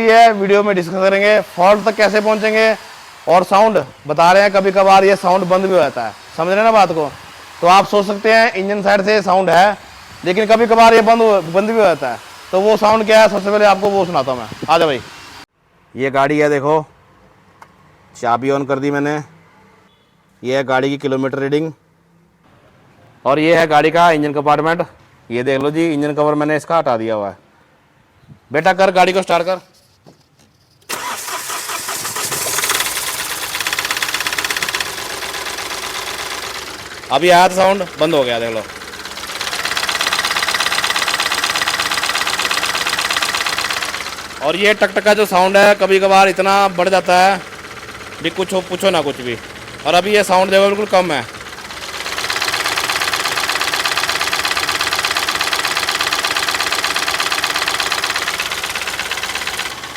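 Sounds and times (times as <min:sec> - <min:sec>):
diesel engine cranking and idling: 0:00.0 - 0:15.5, 0:30.9 - 0:59.9
engine knocking: 0:31.0 - 0:59.9.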